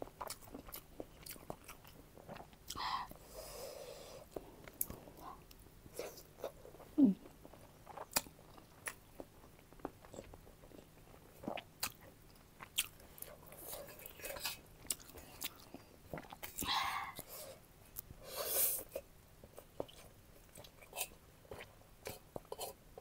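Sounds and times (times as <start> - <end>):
chewing and biting food: 0.0 - 2.8, 4.3 - 16.7.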